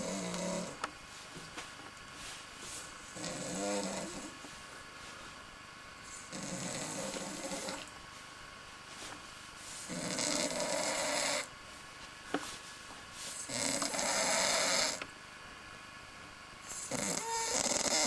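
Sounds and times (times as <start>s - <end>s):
person snoring: 0.0s - 0.8s, 3.2s - 4.4s, 6.2s - 7.8s, 9.9s - 11.5s, 13.5s - 15.0s, 16.7s - 18.0s.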